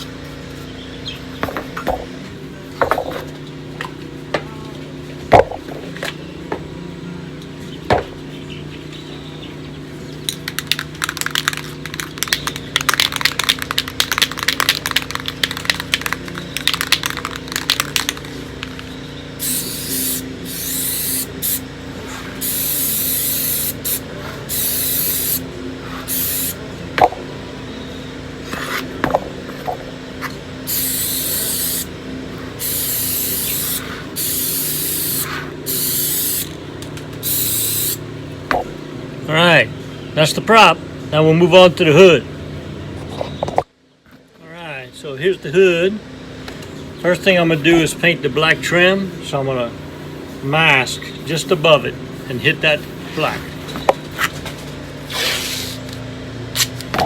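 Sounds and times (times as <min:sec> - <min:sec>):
aerosol can ball rattling: 0:10.3 - 0:21.6, 0:22.4 - 0:25.4, 0:26.1 - 0:26.6, 0:30.7 - 0:31.9, 0:32.6 - 0:36.5, 0:37.2 - 0:38.0
aerosol spray hissing bursts: 0:19.4 - 0:21.6, 0:22.4 - 0:26.6, 0:30.7 - 0:31.9, 0:32.6 - 0:36.5, 0:37.2 - 0:38.0.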